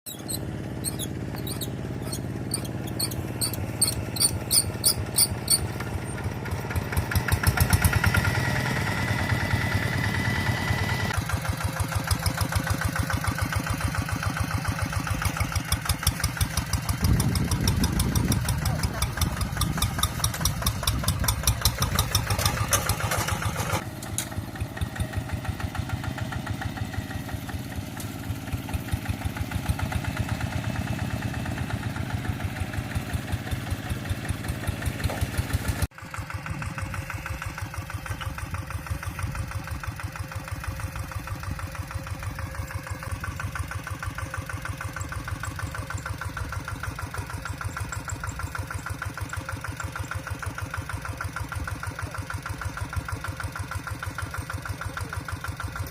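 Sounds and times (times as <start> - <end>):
diesel engine chugging: 0.1 - 55.9.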